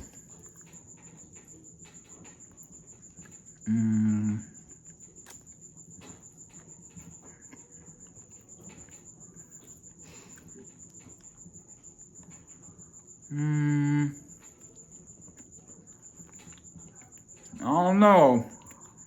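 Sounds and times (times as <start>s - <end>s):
faint chewing clicks: 0.0s - 13.4s, 14.1s - 19.0s
cricket trilling: 0.0s - 19.0s
man humming: 3.7s - 4.5s, 13.3s - 14.4s, 17.6s - 18.6s.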